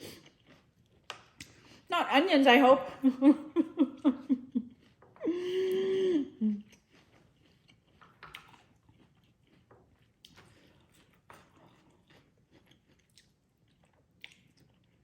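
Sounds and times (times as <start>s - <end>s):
woman's held wordless vocal: 5.2s - 6.6s
chewing clicks: 6.6s - 15.0s.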